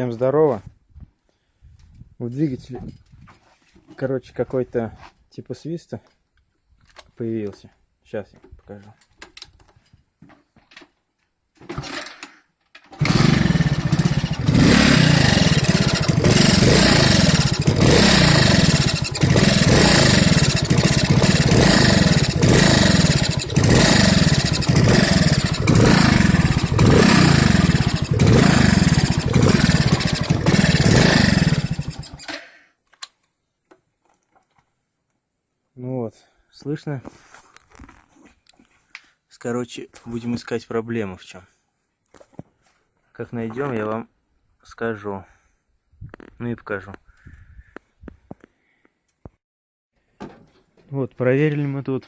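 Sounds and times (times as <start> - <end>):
moped engine revving: 12.9 - 32.3.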